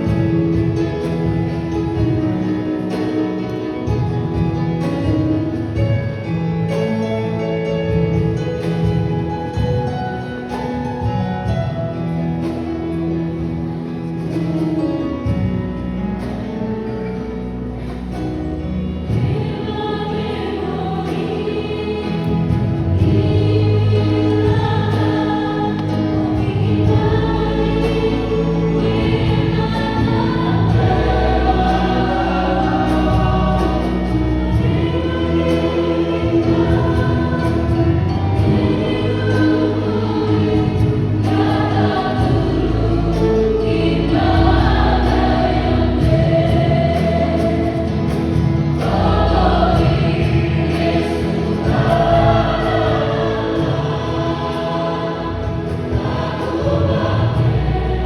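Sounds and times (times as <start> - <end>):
choir singing gospel song: 0.0 - 58.0.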